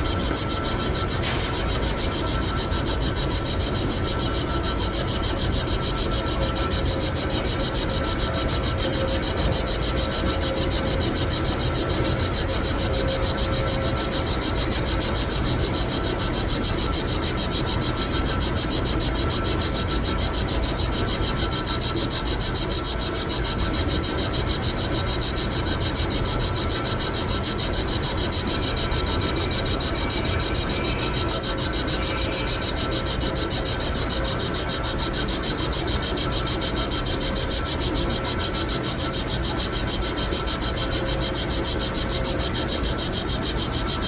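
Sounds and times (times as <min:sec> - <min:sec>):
metal lathe running: 0:00.1 - 0:44.0
faint whining tones: 0:19.1 - 0:44.0.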